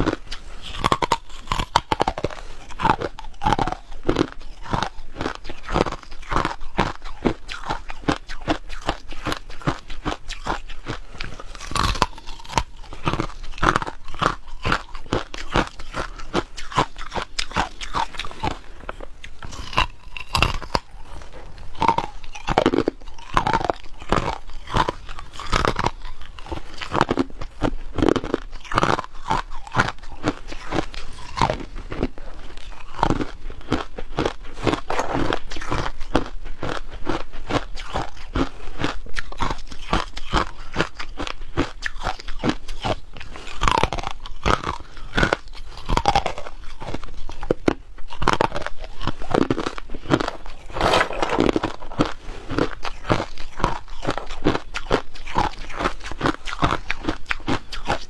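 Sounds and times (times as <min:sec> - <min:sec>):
person chewing ice: 0:00.0 - 0:58.0.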